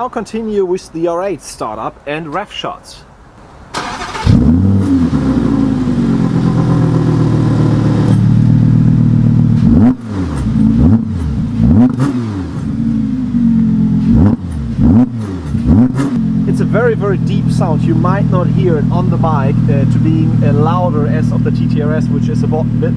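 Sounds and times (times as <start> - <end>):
car engine idling and revving: 3.4 - 22.9
engine starter turning: 3.7 - 5.2.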